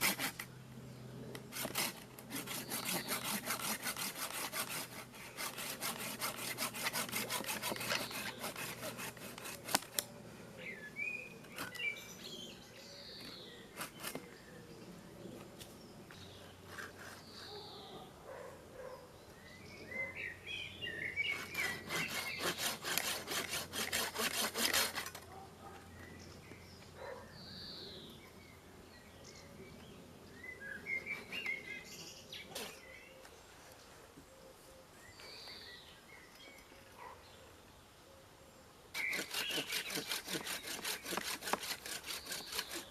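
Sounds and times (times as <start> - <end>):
hand saw cutting wood: 0.0 - 0.5, 1.4 - 10.1, 11.5 - 11.9, 13.7 - 14.3, 16.6 - 17.6, 21.1 - 25.3, 38.9 - 42.9
birds chirping: 0.4 - 4.0, 4.6 - 9.2, 10.0 - 23.1, 25.3 - 42.9.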